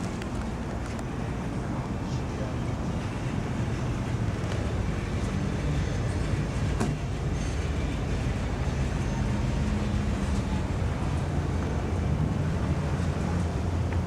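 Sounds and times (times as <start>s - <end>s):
vehicle engine rumble: 0.0s - 14.0s.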